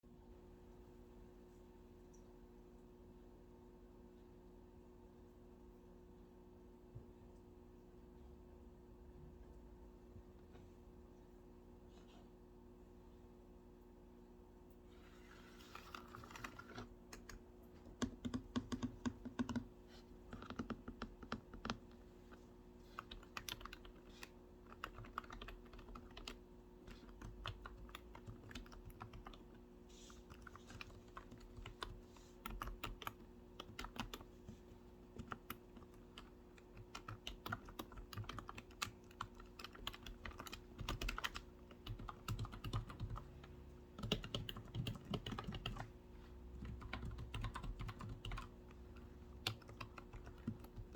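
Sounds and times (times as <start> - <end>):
typing on computer keyboard: 15.7 - 17.4, 18.0 - 19.7, 20.3 - 22.0, 22.9 - 45.9, 46.5 - 50.9.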